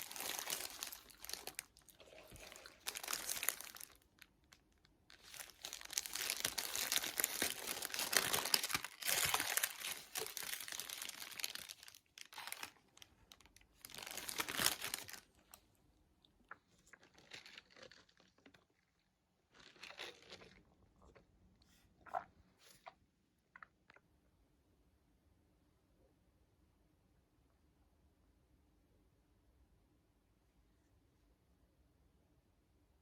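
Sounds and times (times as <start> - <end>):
crinkling handling noise: 0.0 - 15.6, 16.5 - 21.2.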